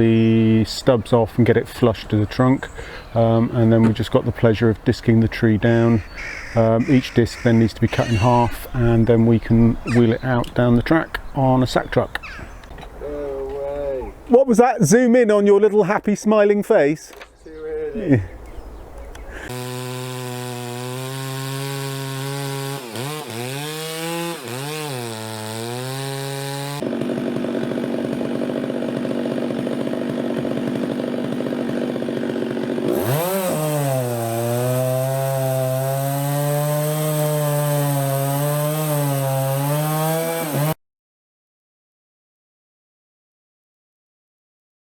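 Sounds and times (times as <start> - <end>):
chainsaw cutting wood: 19.4 - 40.8.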